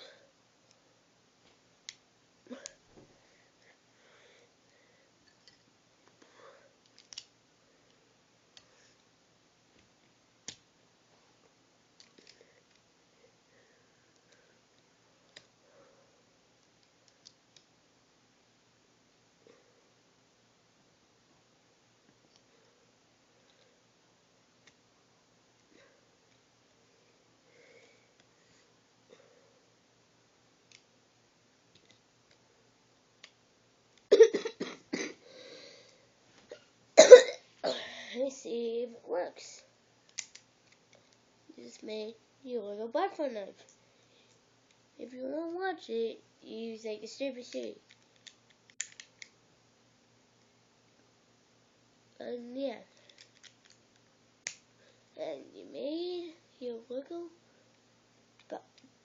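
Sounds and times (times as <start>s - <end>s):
lego pieces clicking: 6.8s - 7.3s, 12.0s - 12.8s, 40.1s - 40.8s, 47.9s - 49.3s
person coughing: 34.1s - 35.2s, 36.5s - 38.2s.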